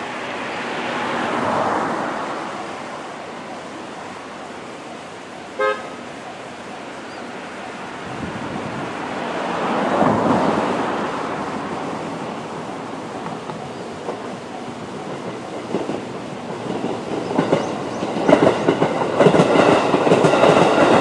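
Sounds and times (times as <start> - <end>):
vehicle passing by: 8.4 - 12.5.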